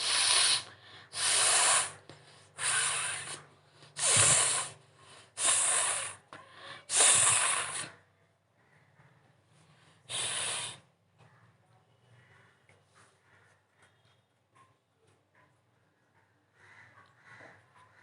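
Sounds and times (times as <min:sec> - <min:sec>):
woman blowing her nose: 0:00.0 - 0:02.0, 0:02.6 - 0:03.4, 0:04.0 - 0:04.8, 0:05.4 - 0:06.3, 0:06.9 - 0:08.0, 0:10.1 - 0:10.8.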